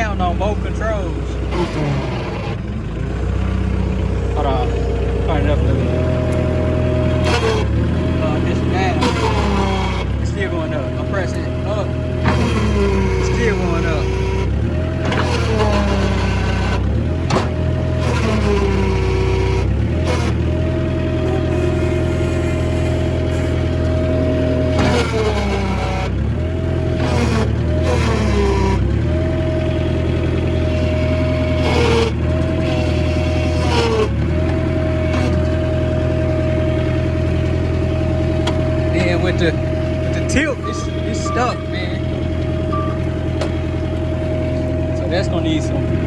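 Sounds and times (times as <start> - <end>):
high hydraulic whine: 0.0 - 2.9, 4.0 - 26.2, 30.5 - 46.0
diesel engine under load: 0.0 - 46.0.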